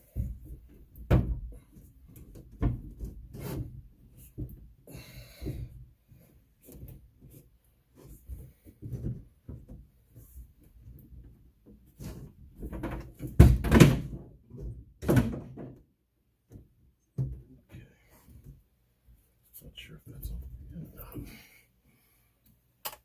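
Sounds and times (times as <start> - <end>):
light knocks and clunks: 16.4 - 18.6.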